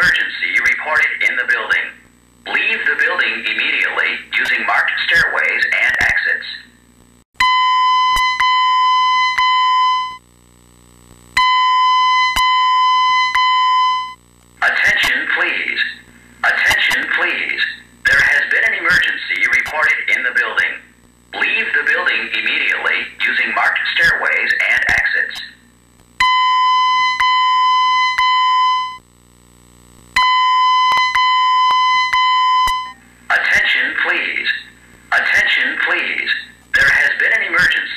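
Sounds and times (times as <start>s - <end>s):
fire alarm alert tone: 7.4s - 10.2s, 11.4s - 14.2s, 26.2s - 29.0s, 30.2s - 33.0s.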